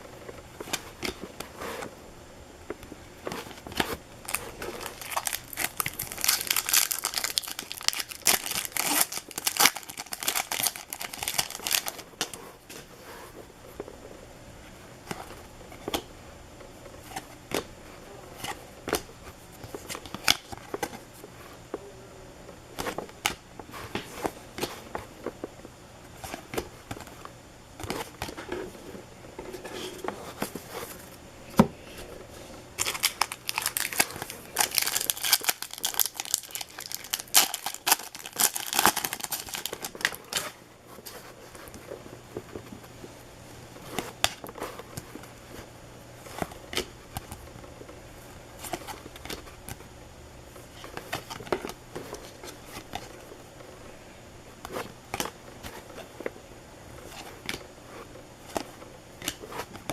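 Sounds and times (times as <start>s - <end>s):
card pack wrappers tearing and crinkling: 3.6s - 12.4s, 32.8s - 40.6s.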